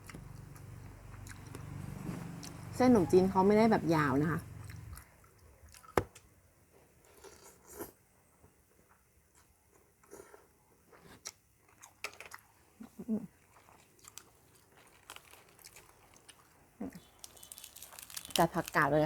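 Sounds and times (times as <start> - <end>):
person chewing with wet clicks: 0.0 - 2.6, 4.6 - 6.2, 11.2 - 18.4.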